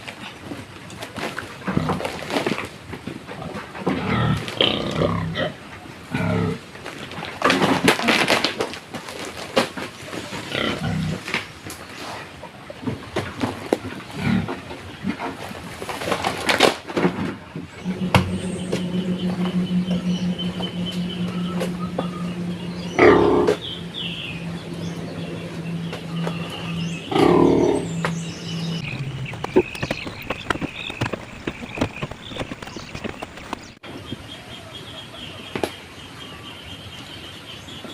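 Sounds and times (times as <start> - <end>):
pigs grunting: 1.7 - 2.3, 3.4 - 6.7, 10.4 - 11.3, 14.1 - 15.4, 26.7 - 27.9
loud rough burst of noise: 17.8 - 33.7
steady low hum: 17.8 - 33.8.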